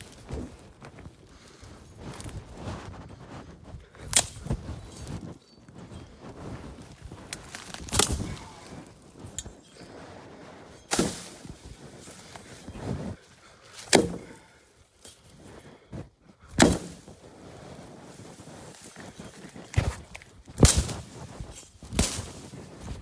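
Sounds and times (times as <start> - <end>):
rustling of plants: 0.0 - 23.0
hand tool chopping weed stalks: 4.0 - 5.2, 6.9 - 9.9, 10.8 - 13.1, 13.7 - 15.3, 16.5 - 17.2, 18.0 - 23.0.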